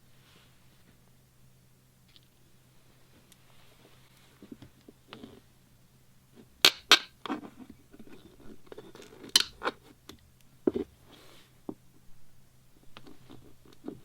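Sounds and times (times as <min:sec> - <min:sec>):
soft scraping: 0:02.8 - 0:05.5
hand tools clicking and snapping: 0:06.6 - 0:07.1, 0:09.0 - 0:10.2.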